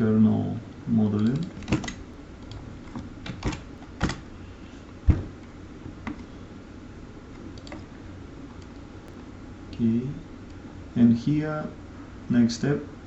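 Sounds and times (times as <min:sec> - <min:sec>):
low room hum: 0:00.0 - 0:13.0
computer keys clicking: 0:01.2 - 0:04.2, 0:07.5 - 0:07.9.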